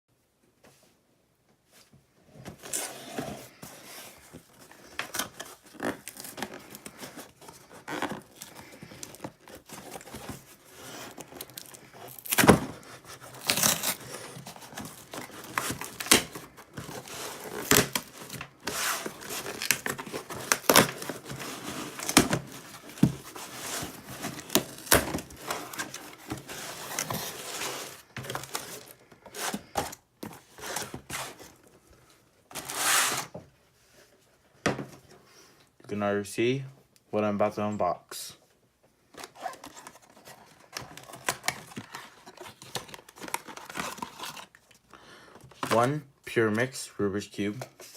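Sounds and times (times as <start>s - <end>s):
package tearing and crinkling: 4.9s - 31.5s, 39.2s - 44.8s.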